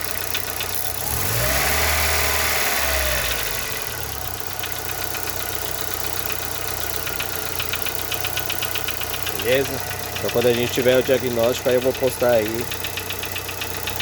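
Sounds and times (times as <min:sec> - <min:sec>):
car engine revving: 0:00.0 - 0:05.2
engine ticking at idle: 0:00.0 - 0:14.0.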